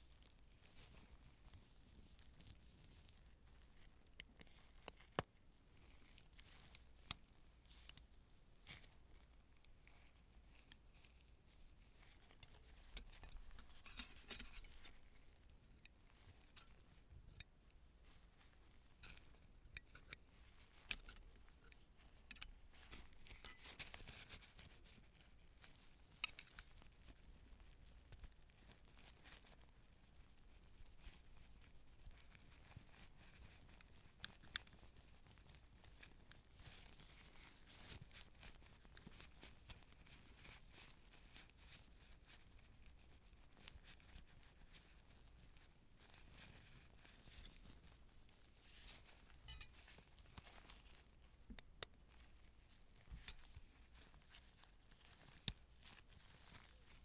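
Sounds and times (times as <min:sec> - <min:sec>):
metal instruments clicking and clinking: 0:12.4 - 0:15.0, 0:20.8 - 0:24.0, 0:49.4 - 0:49.8.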